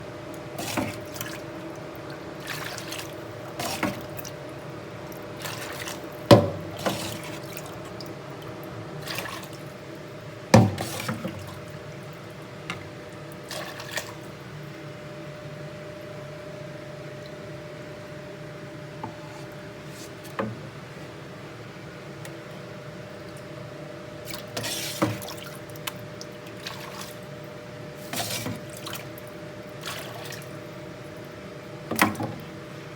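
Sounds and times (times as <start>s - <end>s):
water splashing and dripping in sink: 0.6s - 9.9s, 10.6s - 14.4s, 24.2s - 27.4s, 28.0s - 32.5s.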